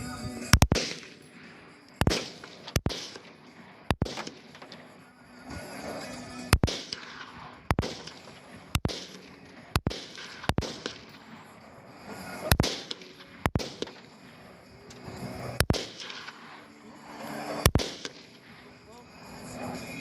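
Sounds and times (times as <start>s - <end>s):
rifle shots: 0.6s - 5.0s, 6.5s - 11.4s, 12.4s - 14.4s, 15.6s - 16.6s, 17.6s - 18.6s.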